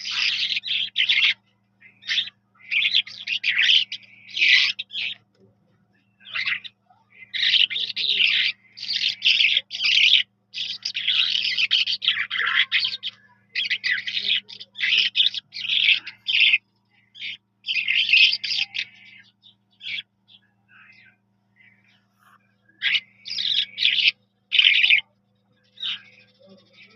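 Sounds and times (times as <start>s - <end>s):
bird chirps: 0.0s - 26.9s
faint low hum: 0.0s - 26.9s
skylark singing: 0.0s - 26.9s.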